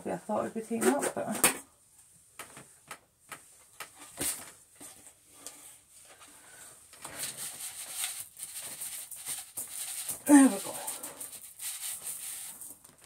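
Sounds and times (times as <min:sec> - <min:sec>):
rice grains pattering on floor: 0:07.6 - 0:13.0.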